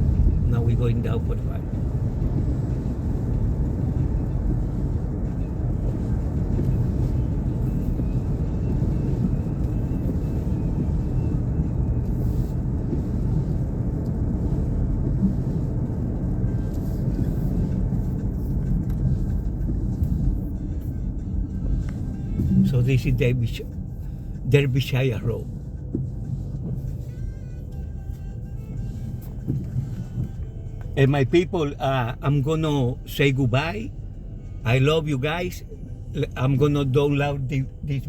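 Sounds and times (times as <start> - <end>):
road and engine noise in car: 0.0 - 38.0.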